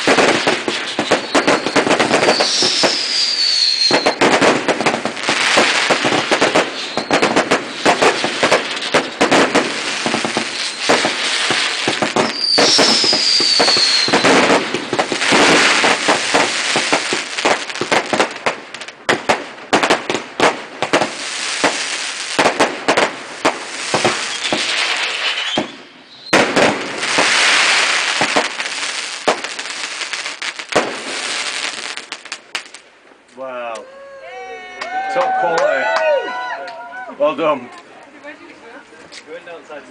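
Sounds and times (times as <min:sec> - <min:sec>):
fireworks bangs and crackle: 0:00.0 - 0:33.6
falling firework whistle: 0:00.7 - 0:04.6, 0:05.4 - 0:17.0, 0:23.8 - 0:28.4.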